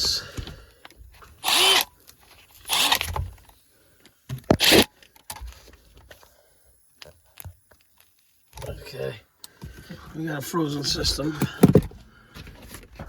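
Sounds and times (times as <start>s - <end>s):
power drill bursts: 1.4s - 1.9s, 2.6s - 3.1s, 4.6s - 4.9s
handling clicks and scrapes: 11.4s - 13.0s.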